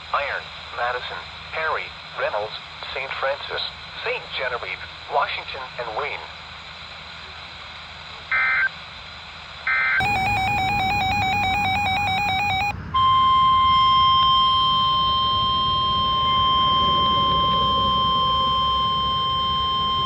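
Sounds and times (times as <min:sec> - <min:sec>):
steady alarm tone: 0:09.7 - 0:20.0
warbling electronic alarm: 0:09.7 - 0:20.0
digital data bursts: 0:10.0 - 0:20.0.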